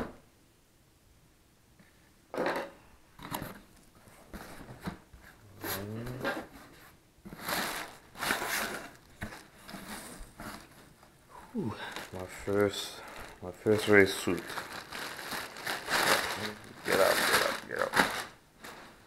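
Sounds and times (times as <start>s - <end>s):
packaging rustling and scraping: 3.2s - 19.0s
short low vocal sound: 5.5s - 6.5s.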